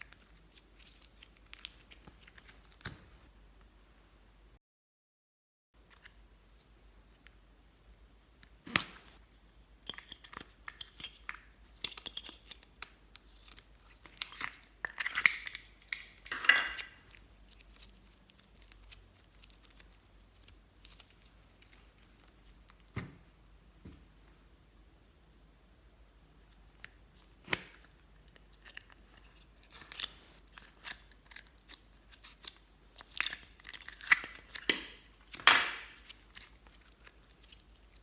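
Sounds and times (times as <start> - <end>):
crinkling and tearing: 0.0 - 3.3, 10.0 - 23.0, 26.5 - 38.0.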